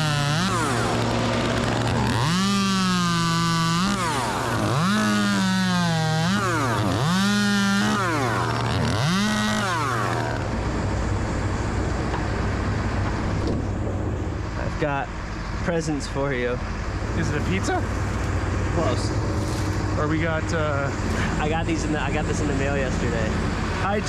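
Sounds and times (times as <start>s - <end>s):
chainsaw revving and cutting: 0.0s - 10.6s
low engine rumble: 0.0s - 24.0s.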